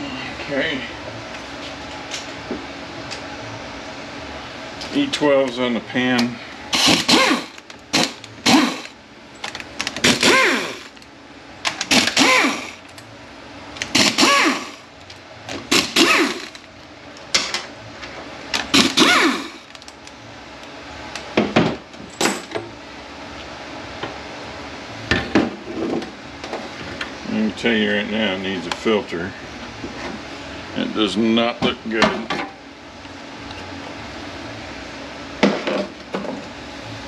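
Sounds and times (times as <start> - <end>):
power tool bursts: 6.7 - 9.0, 10.0 - 10.9, 11.8 - 12.8, 13.9 - 14.8, 15.7 - 16.7, 18.6 - 19.6.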